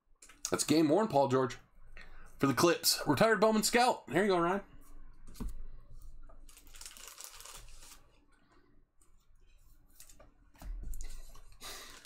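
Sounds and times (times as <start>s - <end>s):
cards and packaging rustling: 6.4s - 8.2s.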